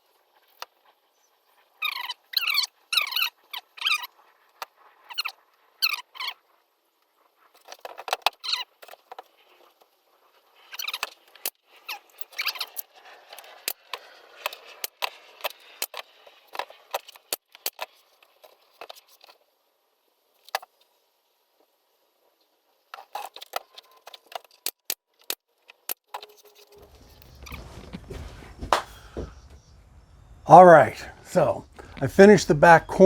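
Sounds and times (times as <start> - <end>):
scratchy scrapes: 26.2 - 32.1.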